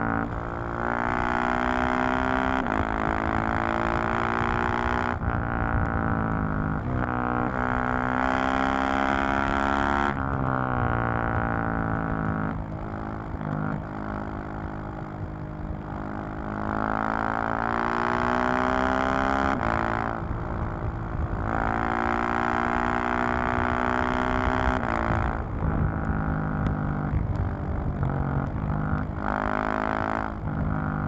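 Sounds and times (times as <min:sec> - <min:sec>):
motorcycle engine accelerating: 0:00.0 - 0:31.0.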